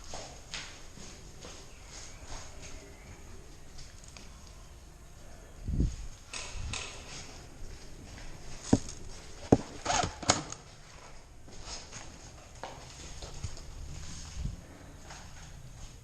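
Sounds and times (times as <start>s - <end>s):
rustling movement: 5.8s - 16.0s.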